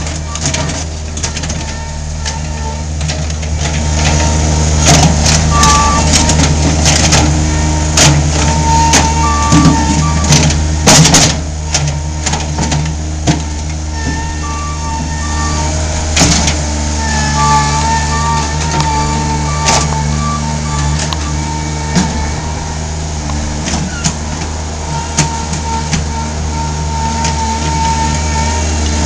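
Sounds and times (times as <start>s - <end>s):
sharp clanks and knocks: 0.0s - 15.3s, 16.1s - 22.6s, 23.2s - 29.0s
skid steer engine running: 0.0s - 29.0s
short high whine: 13.8s - 29.0s.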